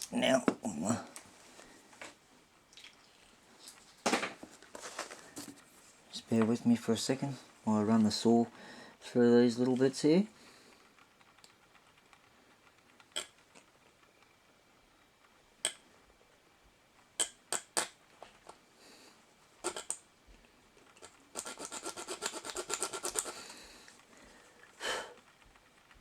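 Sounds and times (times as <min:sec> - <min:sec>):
scrapes and clicks: 0:09.6 - 0:16.4, 0:19.6 - 0:26.0
hand saw cutting metal: 0:21.4 - 0:23.4.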